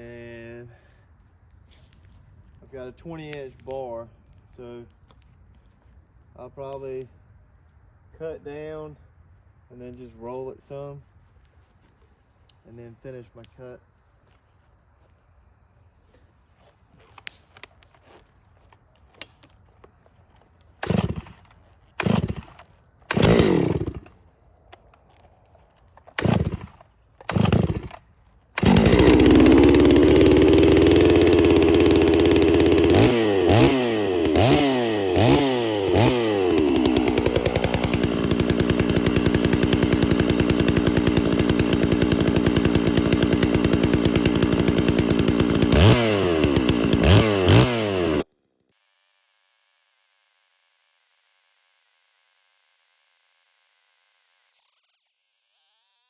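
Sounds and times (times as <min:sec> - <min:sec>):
chainsaw cutting log: 0:20.4 - 0:24.3, 0:25.8 - 0:49.1, 0:53.4 - 0:56.0
chainsaw pull-start sputtering: 0:20.7 - 0:24.2, 0:24.8 - 0:48.6, 0:54.3 - 0:56.0
chainsaw engine revving: 0:20.8 - 0:24.2, 0:26.1 - 0:28.0, 0:28.6 - 0:48.3, 0:54.1 - 0:56.0.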